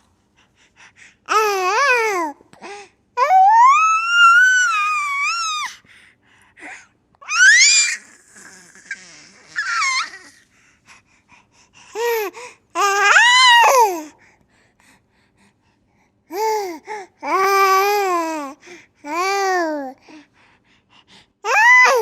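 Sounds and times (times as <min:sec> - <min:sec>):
baby squealing and babbling: 0:07.2 - 0:10.4.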